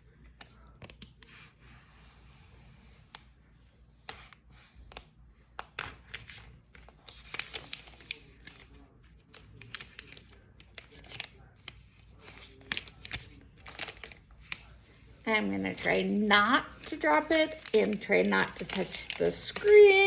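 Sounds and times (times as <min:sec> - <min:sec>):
crackling and tearing: 0:09.6 - 0:14.7
protective wrapping peeling: 0:15.3 - 0:20.0.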